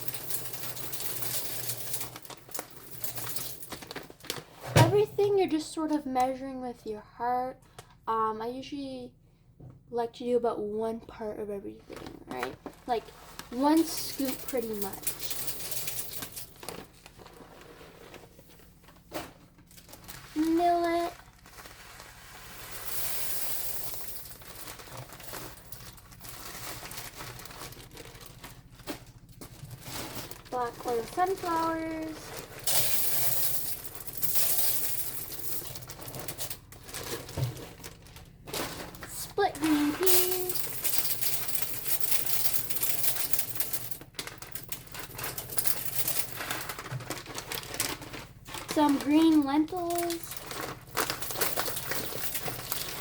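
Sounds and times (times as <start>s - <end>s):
rustling of seed bag: 1.6s - 4.6s, 16.2s - 53.0s
seed pouring into a bin: 19.8s - 28.5s.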